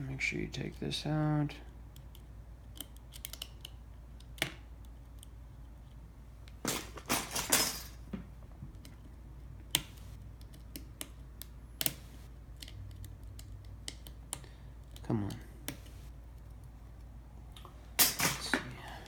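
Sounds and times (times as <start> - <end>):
metal tools scraping and rattling: 6.6 - 8.0, 18.0 - 18.9.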